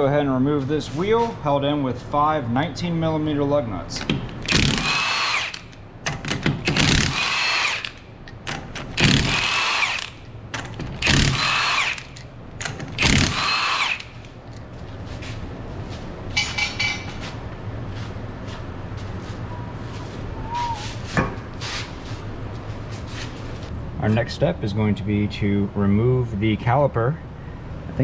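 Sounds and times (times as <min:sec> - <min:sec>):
power tool removing lug nuts: 0:04.0 - 0:14.3.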